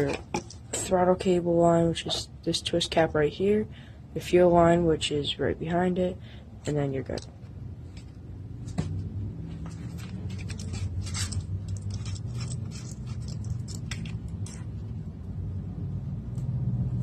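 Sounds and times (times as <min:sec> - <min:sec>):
steady low hum: 0:00.0 - 0:17.0
metal clicks and rattles: 0:09.7 - 0:14.9.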